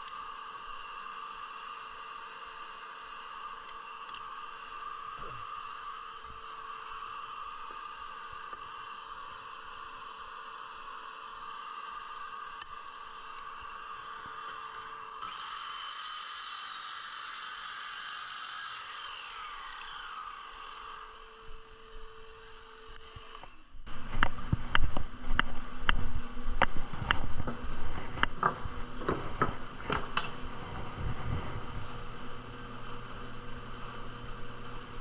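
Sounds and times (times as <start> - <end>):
steady hiss with falling tone: 0.0 - 17.6
low steady hum: 19.6 - 35.0
sharp knocks and clatter: 26.6 - 30.4.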